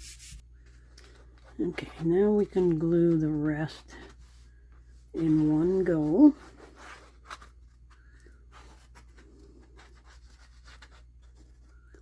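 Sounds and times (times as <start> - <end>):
paper rubbing and scratching: 0.0 - 0.4, 5.2 - 11.7
low steady hum: 0.0 - 12.0.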